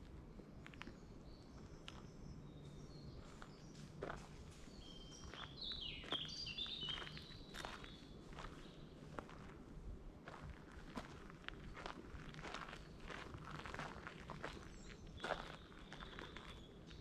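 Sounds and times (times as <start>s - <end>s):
footsteps on woodland path: 0.6s - 17.0s
small birds twittering: 0.7s - 9.0s, 11.8s - 17.0s.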